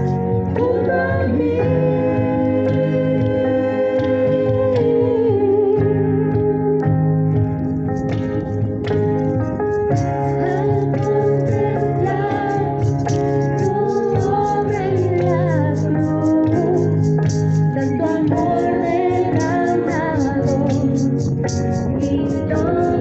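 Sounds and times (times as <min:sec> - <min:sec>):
person singing worship song: 0:00.0 - 0:07.2, 0:09.9 - 0:23.0
keyboard or organ with beat: 0:00.0 - 0:23.0.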